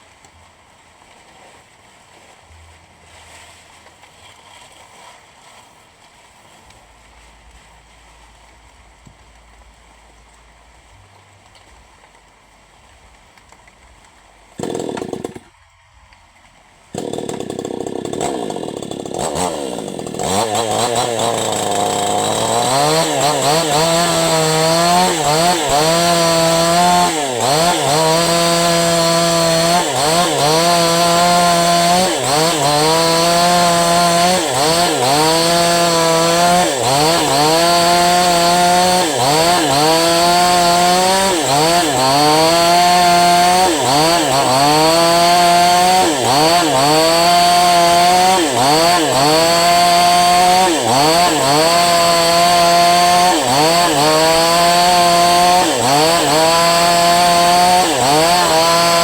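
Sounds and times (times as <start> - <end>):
chainsaw revving: 14.6 - 15.5, 16.9 - 59.0.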